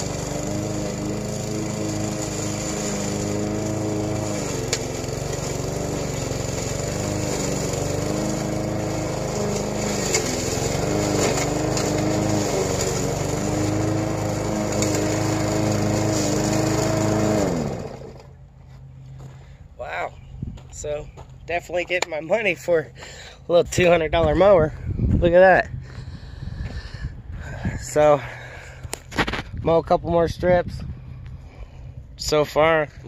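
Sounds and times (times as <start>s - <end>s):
lawn mower engine running: 0.0s - 19.6s.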